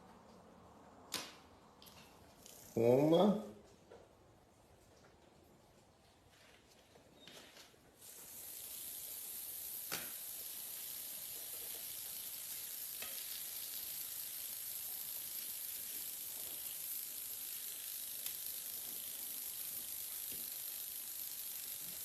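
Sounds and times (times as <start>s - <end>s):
steady hiss: 8.0s - 22.0s.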